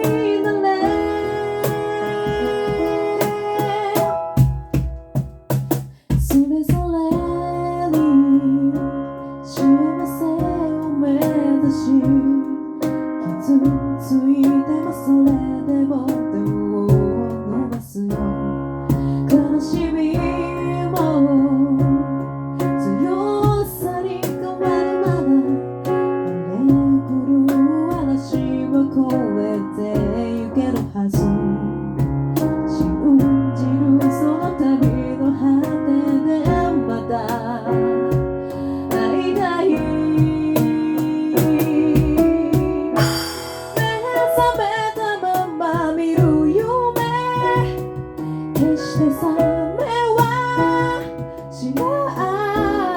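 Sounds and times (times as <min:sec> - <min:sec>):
sharp percussive hits: 0:43.0 - 0:44.4.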